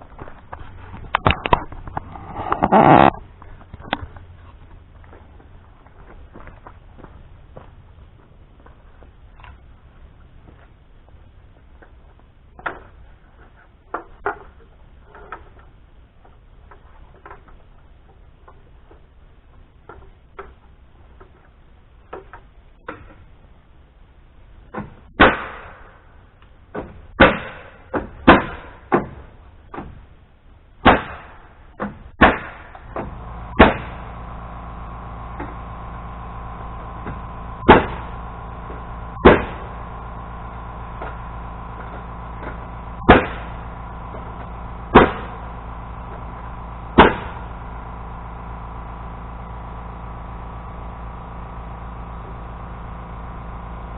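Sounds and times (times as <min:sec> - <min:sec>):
steady motor hum: 0:00.0 - 0:10.1, 0:32.6 - 0:53.9.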